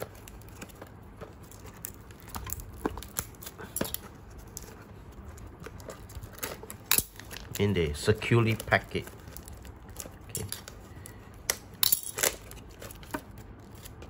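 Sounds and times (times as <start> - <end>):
box packing rustling: 12.2 - 14.0.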